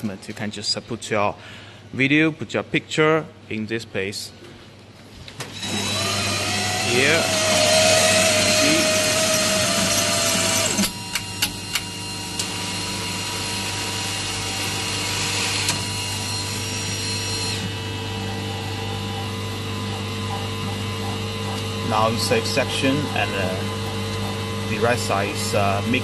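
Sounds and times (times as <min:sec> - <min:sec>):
coffee machine humming: 0:05.4 - 0:26.0
coffee machine motor whirring: 0:05.4 - 0:26.0.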